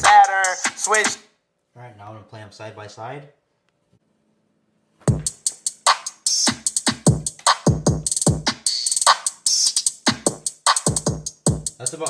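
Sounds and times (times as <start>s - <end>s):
hip-hop beat through speakers: 0.0s - 1.2s, 5.1s - 12.0s.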